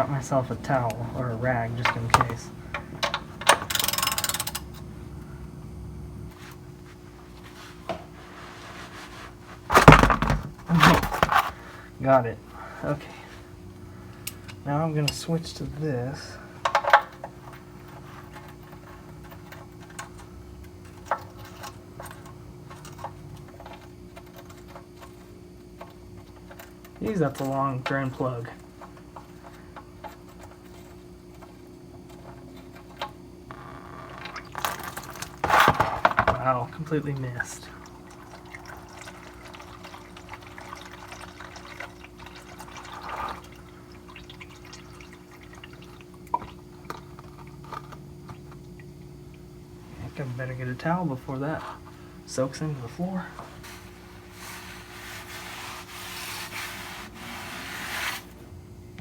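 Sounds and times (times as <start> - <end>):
steady low hum: 0.0 - 59.0
oil pouring and splashing: 34.1 - 49.1.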